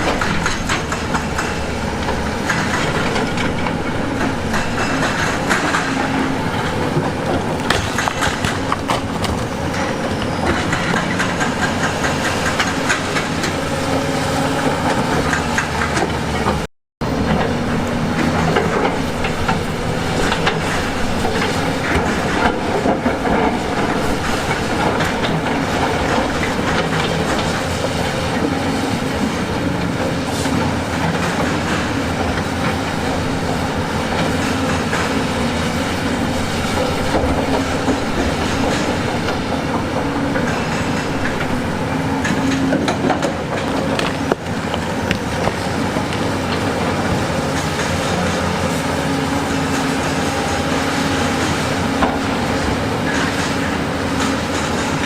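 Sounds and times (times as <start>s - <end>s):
diesel engine running under load: 0.0s - 55.0s.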